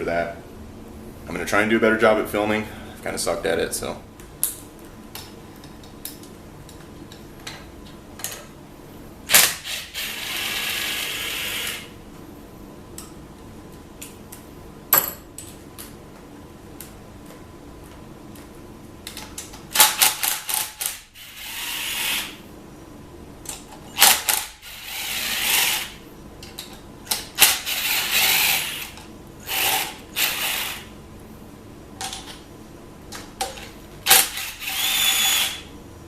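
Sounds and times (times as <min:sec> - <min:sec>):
ratchet wrench clicking and whirring: 0:27.1 - 0:30.9, 0:34.1 - 0:35.6.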